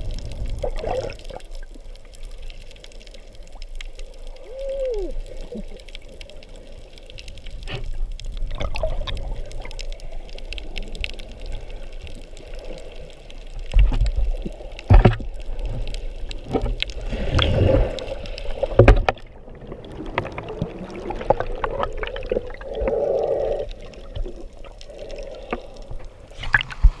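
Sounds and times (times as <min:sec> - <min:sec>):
water sloshing and gurgling: 0:00.0 - 0:27.0.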